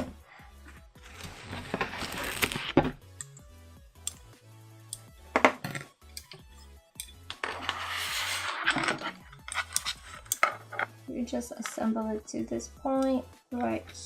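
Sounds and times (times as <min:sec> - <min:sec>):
background music: 0:00.0 - 0:14.0
plastic parts clicking: 0:08.6 - 0:10.9.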